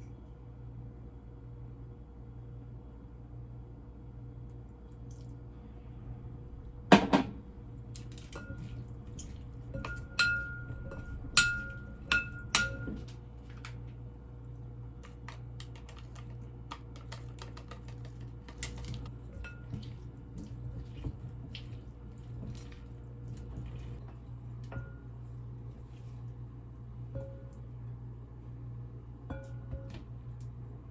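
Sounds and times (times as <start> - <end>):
steady low hum: 0.0 - 30.9
dishes and utensils clinking: 8.2 - 13.1.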